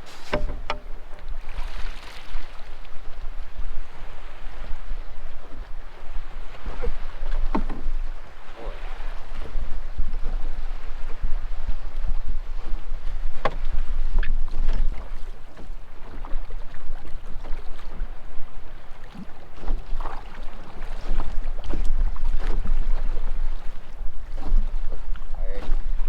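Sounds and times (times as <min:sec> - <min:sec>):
water lapping against hull: 0:00.0 - 0:26.0
wind rumbling on microphone: 0:00.0 - 0:26.0
knocks of gear on hull: 0:00.1 - 0:01.3, 0:07.4 - 0:08.0, 0:13.4 - 0:13.8.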